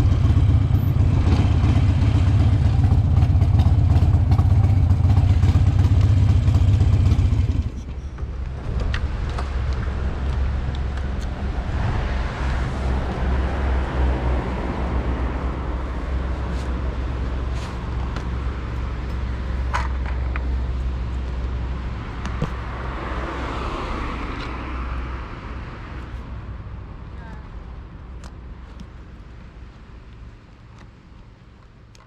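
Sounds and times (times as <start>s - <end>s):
motorcycle engine idling: 0.0s - 7.8s
street traffic noise: 0.0s - 32.0s.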